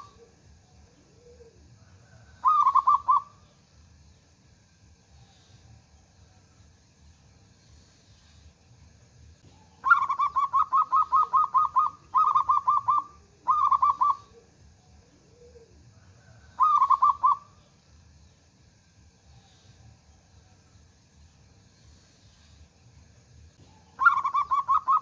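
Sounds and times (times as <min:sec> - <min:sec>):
dove cooing: 0:00.0 - 0:03.4, 0:09.5 - 0:17.6, 0:23.6 - 0:25.0.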